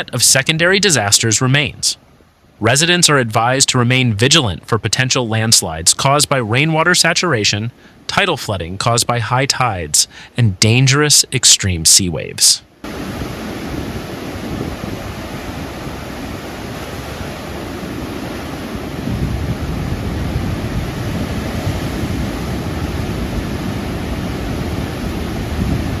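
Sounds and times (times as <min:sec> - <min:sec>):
wind and sea rushing: 0:00.0 - 0:26.0.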